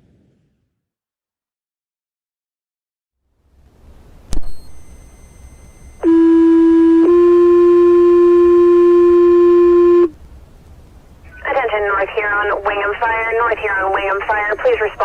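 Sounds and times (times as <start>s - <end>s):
two-tone paging tones: 4.4s - 10.1s.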